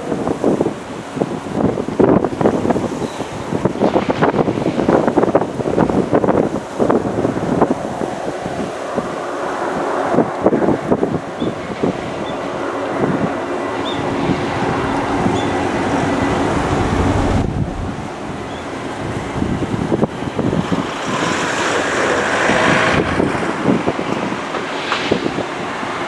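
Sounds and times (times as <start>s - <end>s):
airliner engines: 0.0s - 26.0s
wind buffeting microphone: 0.0s - 26.0s
hissy rush of sound: 2.0s - 26.0s.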